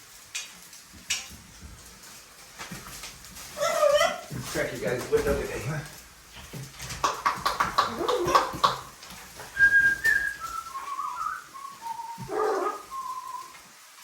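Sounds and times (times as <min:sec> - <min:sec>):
clear whistled notes: 0:09.6 - 0:13.6.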